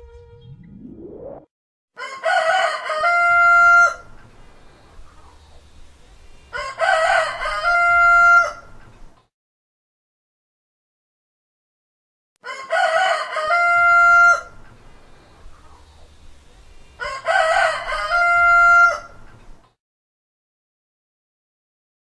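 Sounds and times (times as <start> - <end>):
short rising sweep: 0.4 - 1.5
rooster crowing: 2.0 - 4.2, 6.5 - 8.8, 12.4 - 14.6, 17.0 - 19.3.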